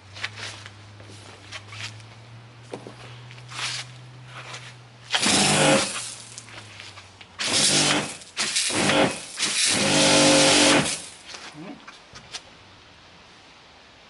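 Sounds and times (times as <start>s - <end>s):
pressure washer humming: 5.1s - 11.3s
pressure washer motor and water spray: 5.1s - 11.4s.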